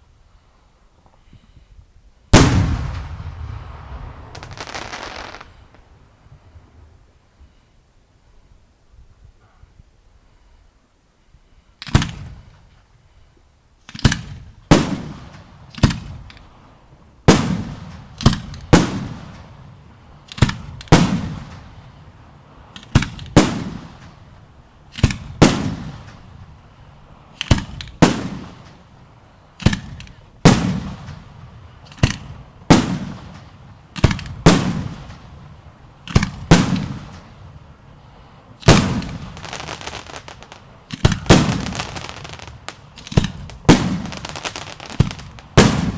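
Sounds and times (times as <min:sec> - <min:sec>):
fireworks bursting with bangs: 0:02.3 - 0:06.4, 0:13.9 - 0:16.6, 0:17.3 - 0:45.9
fireworks crackling: 0:02.4 - 0:06.4, 0:29.6 - 0:45.9.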